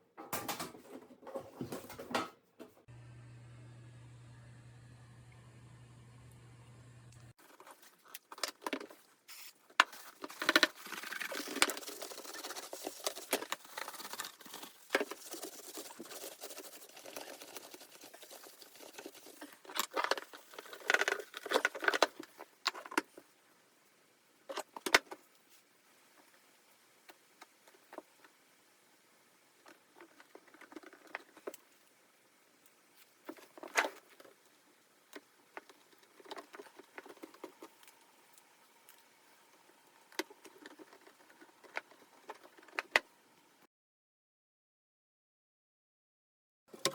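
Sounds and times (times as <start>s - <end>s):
rustling and scraping: 7.4s - 23.2s.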